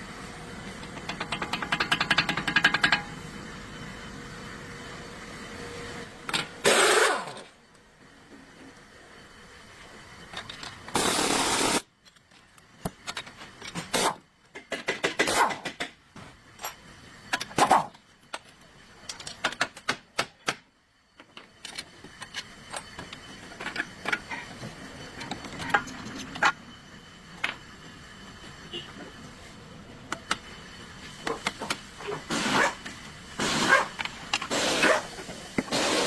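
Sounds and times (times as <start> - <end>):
hissing burst: 32.2 - 36.0.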